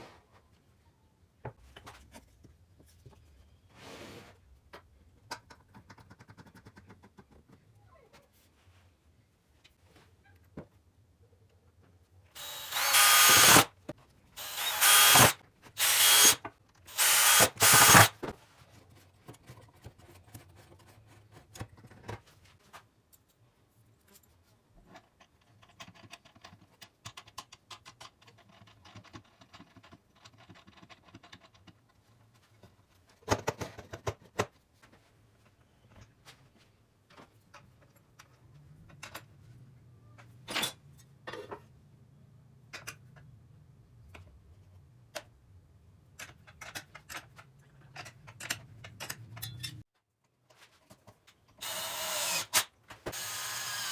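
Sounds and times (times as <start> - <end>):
power drill bursts: 12.4 - 13.7, 14.4 - 18.2, 51.6 - 53.9
clicks and handling: 46.2 - 49.8.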